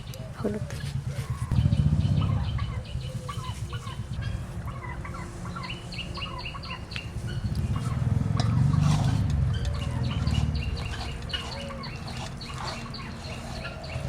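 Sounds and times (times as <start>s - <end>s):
birds chirping: 0.0s - 14.0s
steady low rumble: 0.0s - 14.0s.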